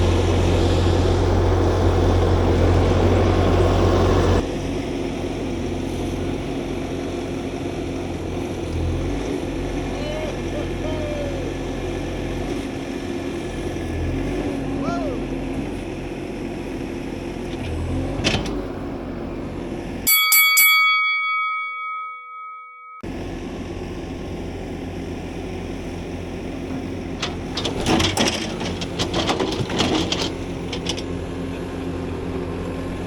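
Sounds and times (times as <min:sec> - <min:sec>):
skid steer engine running: 0:00.0 - 0:20.1, 0:23.0 - 0:33.0
clanks and rattles: 0:17.5 - 0:18.7, 0:26.7 - 0:31.2
bell-like chime: 0:20.1 - 0:23.0.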